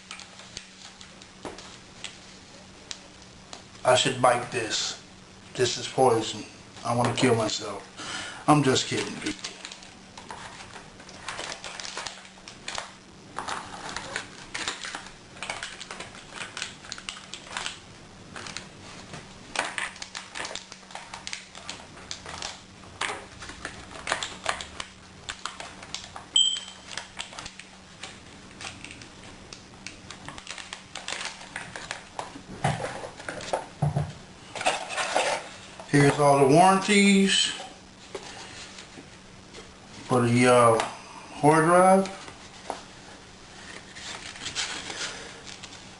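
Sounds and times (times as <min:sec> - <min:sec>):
faint steady hum: 0:00.0 - 0:45.9
plastic packaging rustling and clicking: 0:08.7 - 0:33.9, 0:43.6 - 0:45.9
short high beep: 0:26.4 - 0:26.8.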